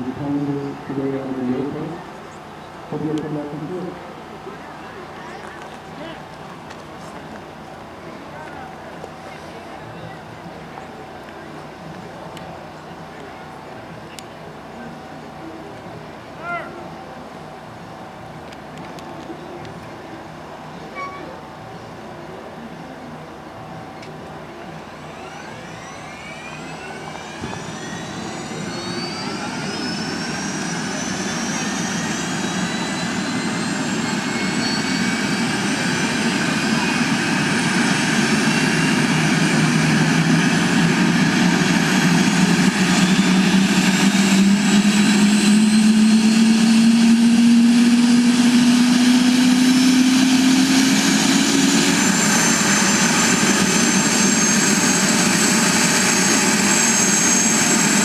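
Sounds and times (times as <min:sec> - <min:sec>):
helicopter rotor hum: 0:00.0 - 0:18.5, 0:19.3 - 0:58.0
turbine engine whine: 0:00.0 - 0:58.0.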